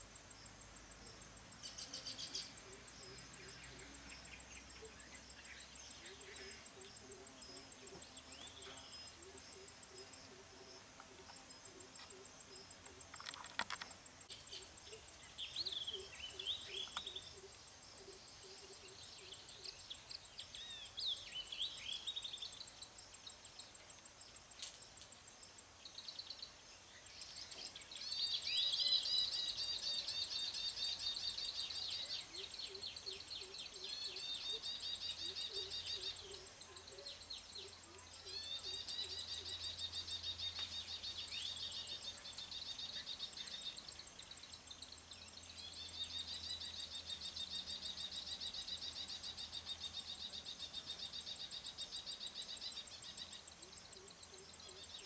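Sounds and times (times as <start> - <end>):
weaver birds chirping: 0.0 - 55.0
buzzy chattering bird song: 25.1 - 55.0.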